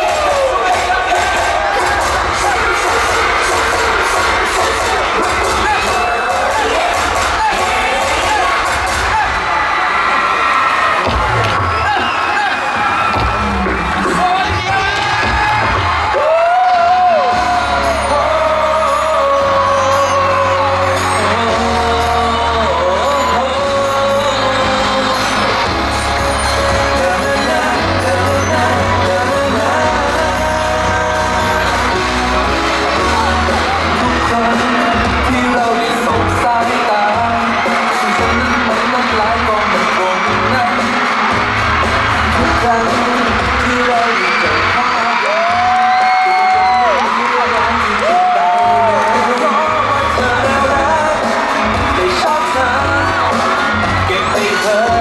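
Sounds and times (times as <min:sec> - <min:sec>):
band playing steady beat: 0:00.0 - 0:09.4, 0:17.3 - 0:55.0
audience whooping and cheering: 0:00.0 - 0:55.0
person singing: 0:16.1 - 0:55.0.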